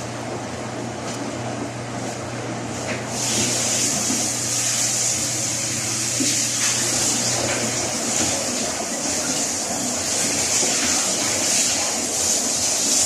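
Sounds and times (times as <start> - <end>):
washing machine motor hum: 0.0 - 13.0
water hissing: 3.1 - 13.0.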